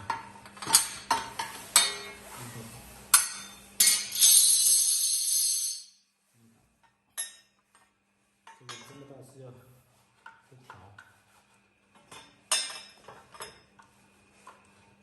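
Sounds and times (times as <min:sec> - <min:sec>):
metal parts clinking: 0:03.8 - 0:05.9.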